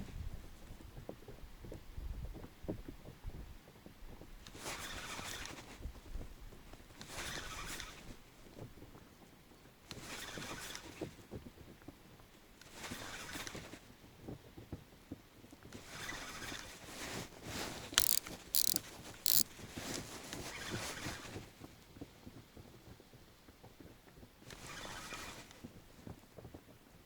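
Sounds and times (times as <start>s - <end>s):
sharp clicks: 18.0s - 19.4s
spinning reel whirring: 18.0s - 19.4s.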